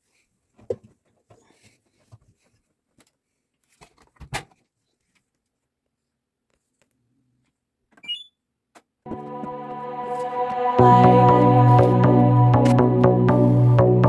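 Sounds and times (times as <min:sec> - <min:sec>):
background music: 0:09.1 - 0:14.0
brief high tone: 0:09.1 - 0:14.0.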